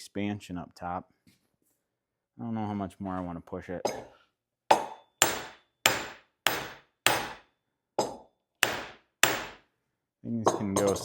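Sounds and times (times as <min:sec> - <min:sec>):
hammer striking steel: 0:04.7 - 0:09.6.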